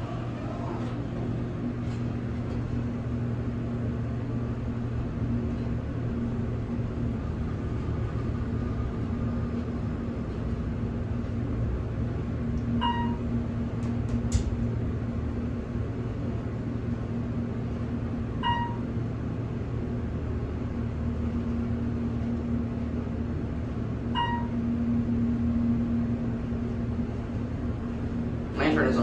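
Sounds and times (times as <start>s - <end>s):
elevator hum and rumble: 0.0s - 29.0s
short electronic beeps: 12.8s - 13.2s, 18.4s - 18.8s, 24.1s - 24.6s.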